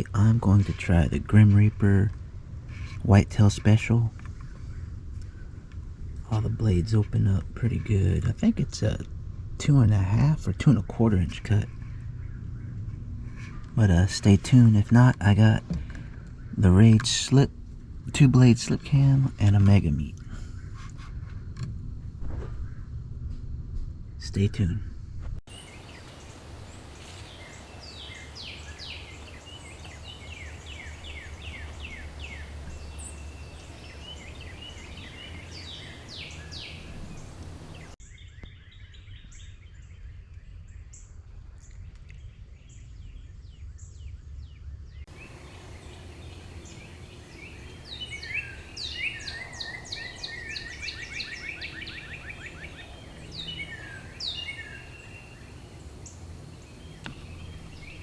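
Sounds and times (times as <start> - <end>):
small birds chirping: 25.5 - 38.0, 45.1 - 58.0
steady low rumble: 45.1 - 58.0.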